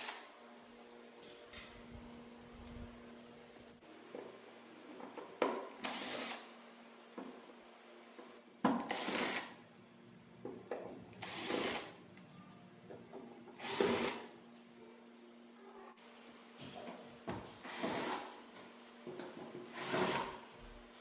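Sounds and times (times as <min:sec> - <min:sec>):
electric power driver whirring: 0:05.8 - 0:06.5.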